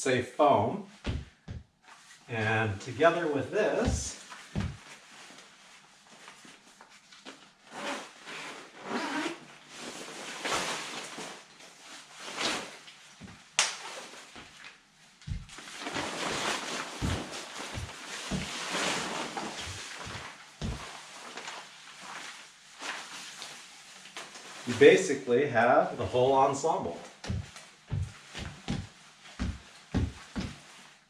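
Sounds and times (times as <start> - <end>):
soft thumps: 1.0 - 1.8, 3.9 - 4.8, 17.0 - 18.6, 27.2 - 30.6
clothing and packaging rustling: 1.0 - 25.1, 26.0 - 31.0.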